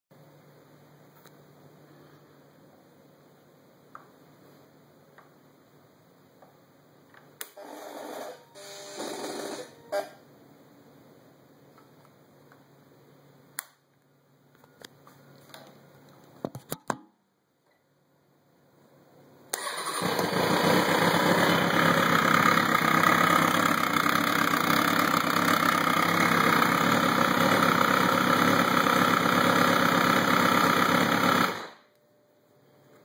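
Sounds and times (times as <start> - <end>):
motorcycle engine running: 19.9 - 31.7.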